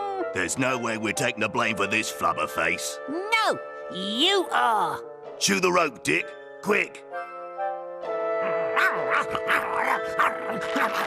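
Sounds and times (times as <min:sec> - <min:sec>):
cartoon background music: 0:00.0 - 0:11.0
puppies yapping: 0:08.7 - 0:11.0.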